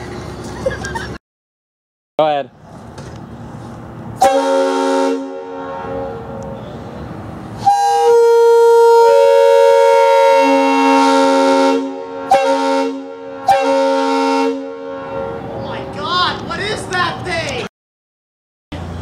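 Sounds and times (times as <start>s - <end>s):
locomotive air horn: 4.2s - 7.0s, 7.6s - 15.6s.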